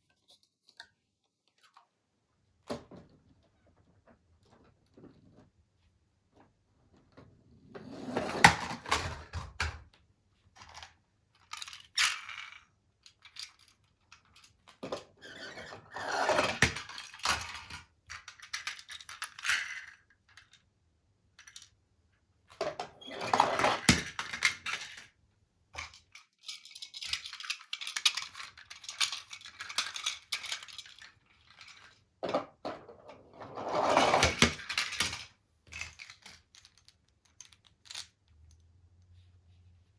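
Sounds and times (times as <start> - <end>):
plastic toy vehicles clattering: 7.8 - 9.9, 10.6 - 20.7, 22.5 - 25.2, 25.8 - 38.6.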